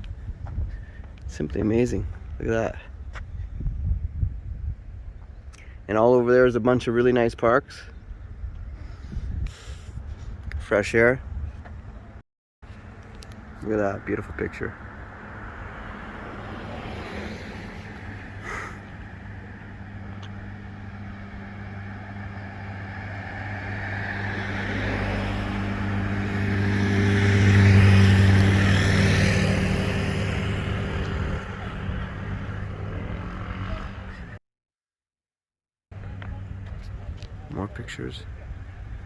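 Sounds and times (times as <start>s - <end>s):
vehicle engine hum: 11.3s - 34.4s, 35.9s - 39.0s.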